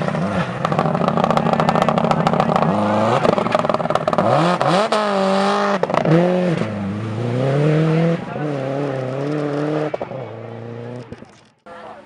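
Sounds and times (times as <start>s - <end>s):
exhaust pops: 0.0s - 6.8s
rally car engine accelerating: 0.0s - 11.5s.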